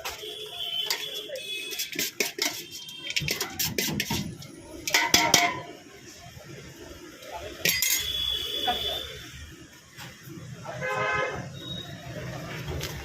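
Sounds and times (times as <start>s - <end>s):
metal utensils clinking: 0.8s - 5.7s, 7.6s - 8.3s.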